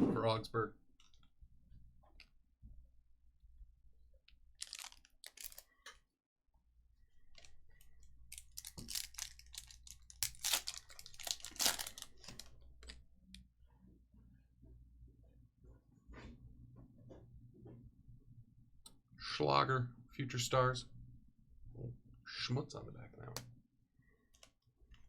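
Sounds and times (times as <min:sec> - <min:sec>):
wrappers crinkling and rustling: 0:04.6 - 0:05.7, 0:07.3 - 0:13.0.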